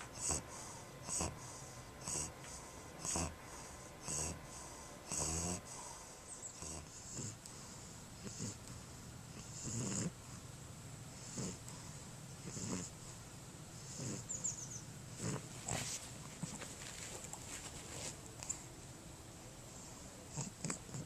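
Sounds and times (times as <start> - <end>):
dog rasping breaths: 15.1 - 18.7.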